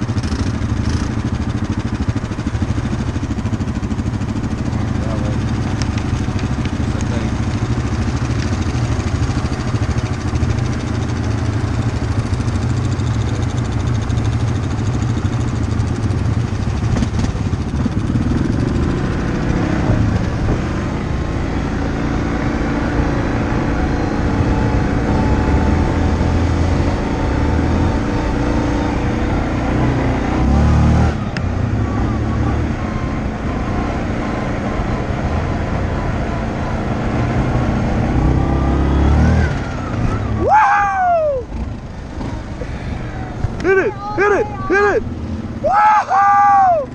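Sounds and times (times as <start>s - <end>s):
off-road vehicle engine running: 0.0s - 46.9s.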